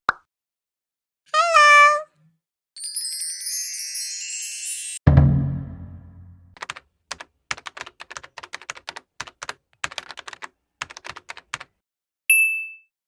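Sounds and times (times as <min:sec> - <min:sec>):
computer keyboard typing: 0:06.6 - 0:11.8.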